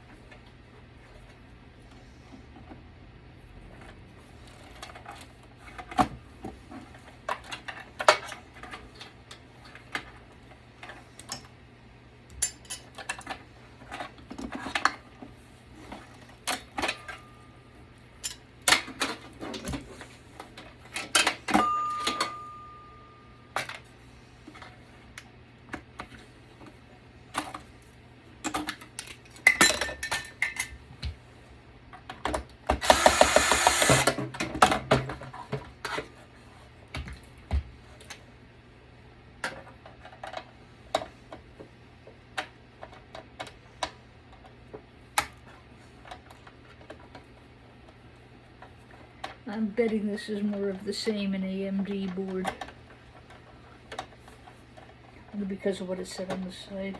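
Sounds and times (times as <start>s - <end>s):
motorised whir: 32.8s - 34.2s.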